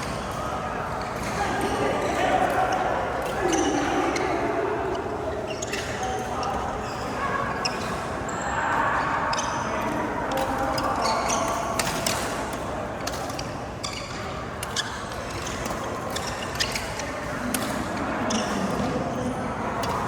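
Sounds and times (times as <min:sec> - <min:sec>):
shoes squeaking on court: 0:04.9 - 0:08.4, 0:10.7 - 0:12.4, 0:13.0 - 0:19.0.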